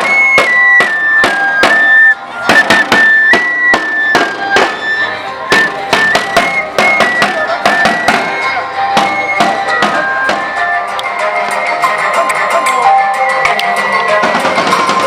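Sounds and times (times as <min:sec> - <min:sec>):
rapid drum strokes: 0:00.0 - 0:10.6
high wind instrument melody: 0:00.0 - 0:15.0.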